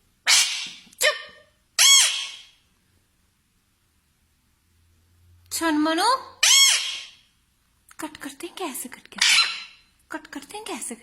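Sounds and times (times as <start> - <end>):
parrot talking: 0.2 - 2.6, 6.0 - 7.2, 9.1 - 9.8.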